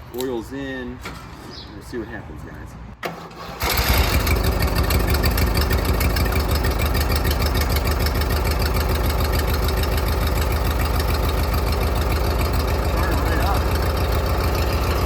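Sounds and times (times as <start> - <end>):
riding mower engine running: 3.0 - 15.0.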